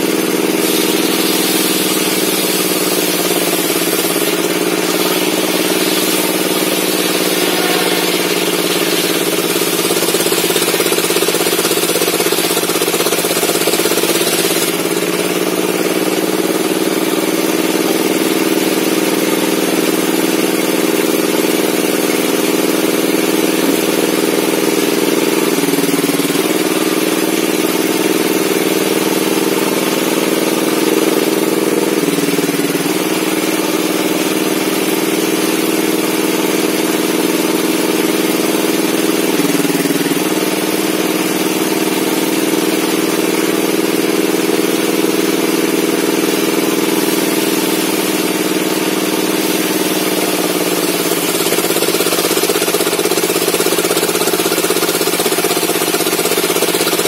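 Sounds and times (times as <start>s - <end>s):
circular saw cutting wood: 0.0s - 17.3s, 21.3s - 37.0s.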